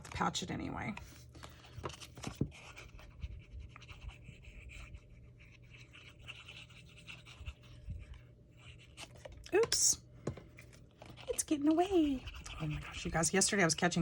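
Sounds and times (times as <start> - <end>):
steady low hum: 0.0 - 14.0
paper scratching and rustling: 0.9 - 9.4.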